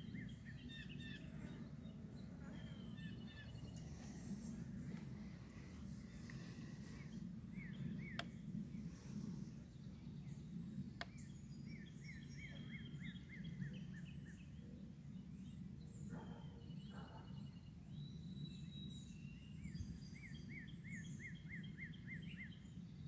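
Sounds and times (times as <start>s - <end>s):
low background rumble: 0.0s - 16.2s
faint bird chirps: 0.0s - 23.0s.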